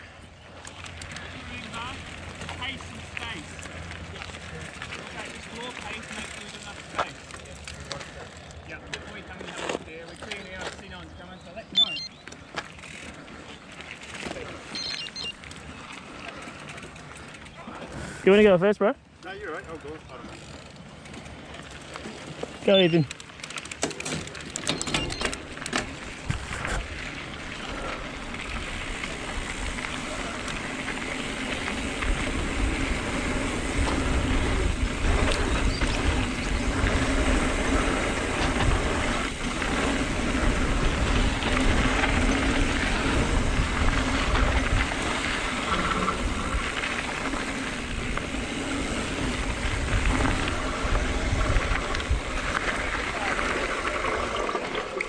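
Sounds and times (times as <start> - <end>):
bike tyres rolling and rattling: 0.0 - 55.0
bike clicks and knocks: 0.5 - 11.0, 12.2 - 18.0, 20.1 - 32.8, 33.6 - 54.9
wind on microphone: 31.8 - 46.8, 47.8 - 53.6.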